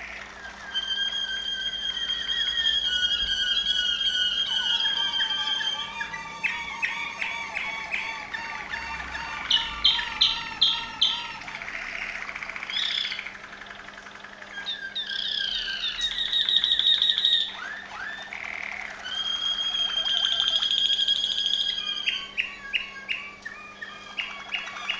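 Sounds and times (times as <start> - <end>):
canary singing: 0.0 - 24.9.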